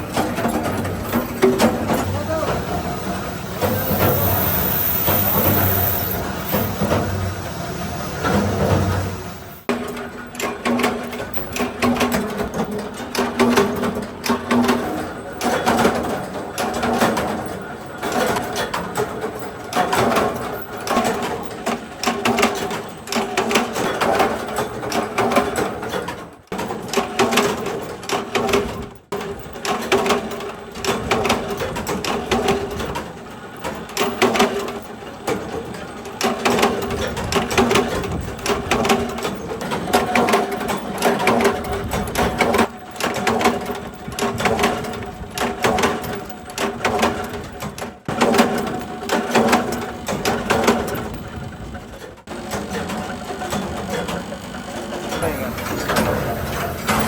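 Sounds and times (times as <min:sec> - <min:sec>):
steady machine hum: 0:00.0 - 0:09.7, 0:55.2 - 0:57.0
workshop machine clattering: 0:00.0 - 0:51.4, 0:52.3 - 0:57.0.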